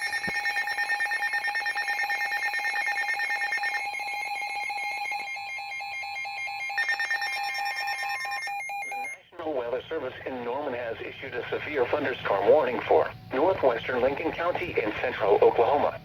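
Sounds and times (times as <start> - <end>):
pulsing electronic alarm beep: 0.0 - 9.2
broadcast voice: 9.3 - 16.0.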